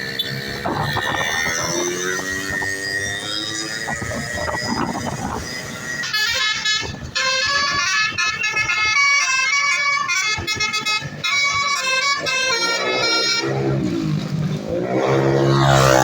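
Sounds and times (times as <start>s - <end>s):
street noise: 0.0s - 16.0s
musical air horn melody: 5.9s - 14.0s.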